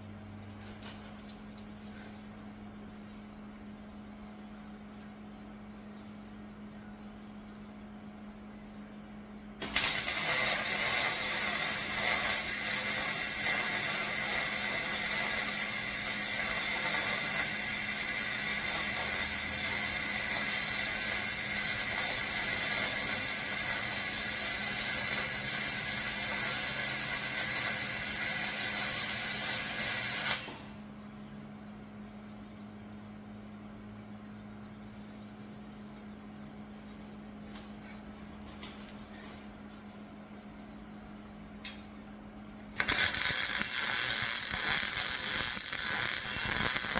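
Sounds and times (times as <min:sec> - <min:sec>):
electric arc welding crackle: 0:09.6 - 0:31.7, 0:42.7 - 0:46.9.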